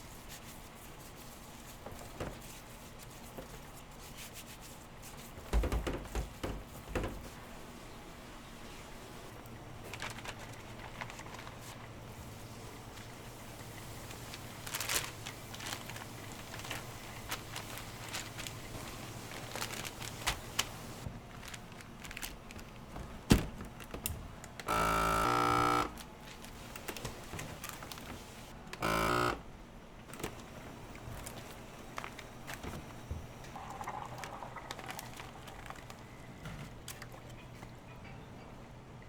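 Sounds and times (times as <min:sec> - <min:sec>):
flat electric buzzes: 0:24.7 - 0:26.3, 0:28.3 - 0:30.4.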